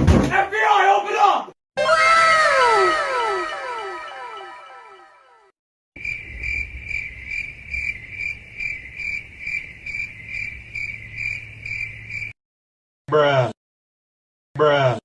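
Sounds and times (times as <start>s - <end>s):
falling tone: 1.8s - 5.5s
crickets chirping: 6.0s - 12.4s.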